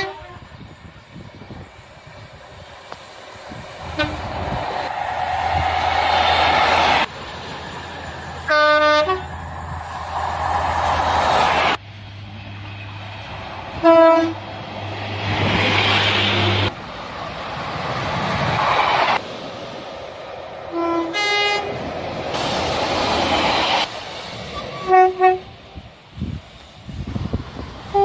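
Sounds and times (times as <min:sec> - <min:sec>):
train horn blasts: 0:00.0 - 0:00.5, 0:03.9 - 0:04.3, 0:08.5 - 0:09.3, 0:13.8 - 0:14.4, 0:20.7 - 0:21.8, 0:24.7 - 0:25.6
train rumbling: 0:00.0 - 0:28.0.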